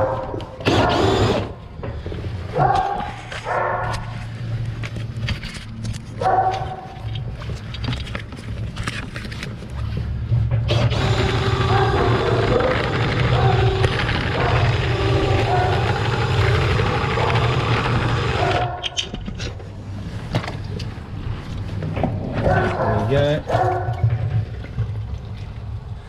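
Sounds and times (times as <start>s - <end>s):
dogs barking: 0.0s - 1.2s, 2.5s - 4.1s, 6.2s - 7.1s, 11.4s - 19.0s, 22.3s - 24.1s
low mechanical drone: 0.0s - 26.0s.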